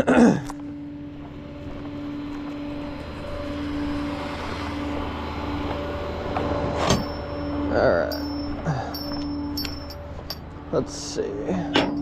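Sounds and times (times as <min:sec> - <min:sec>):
engine running with humming tone: 0:00.0 - 0:12.0.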